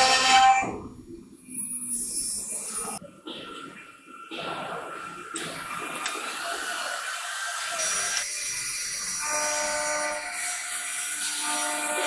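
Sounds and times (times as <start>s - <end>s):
hiss: 4.4s - 12.0s.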